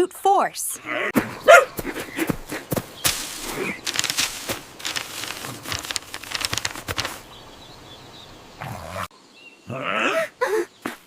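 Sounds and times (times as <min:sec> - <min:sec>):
crackling clicks and rustling: 0:03.1 - 0:07.3.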